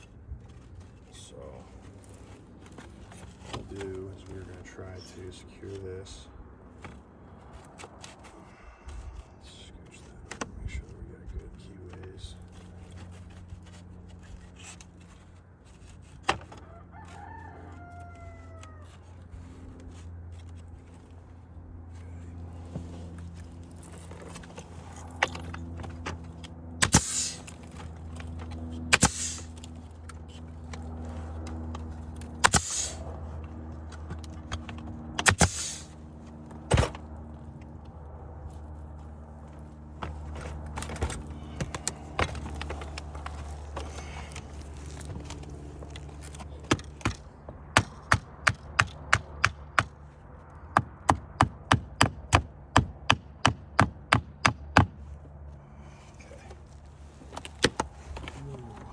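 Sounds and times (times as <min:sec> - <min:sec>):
rooster crowing: 0:16.6 - 0:19.0
sharp knocks on wood: 0:34.6 - 0:35.7, 0:46.6 - 0:50.0, 0:50.7 - 0:55.0.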